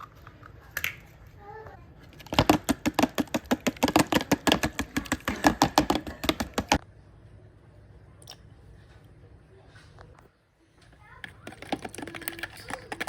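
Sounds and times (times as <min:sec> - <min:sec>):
whisk clicking against bowl: 0:11.2 - 0:13.0.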